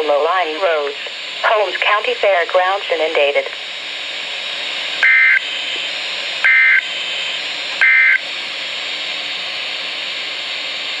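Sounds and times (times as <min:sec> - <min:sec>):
radio hiss: 0:00.0 - 0:11.0
two-tone digital data bursts: 0:06.4 - 0:06.8, 0:07.8 - 0:08.2.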